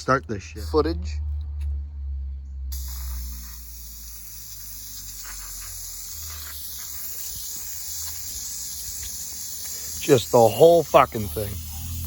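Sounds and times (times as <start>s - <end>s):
aerosol can spraying: 2.7s - 12.0s.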